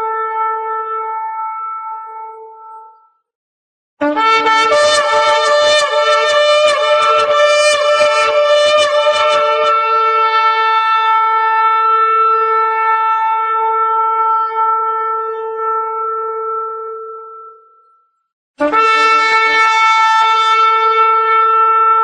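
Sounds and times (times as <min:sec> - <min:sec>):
horn blowing a long note: 0:00.0 - 0:03.0, 0:04.0 - 0:17.8, 0:18.6 - 0:22.0.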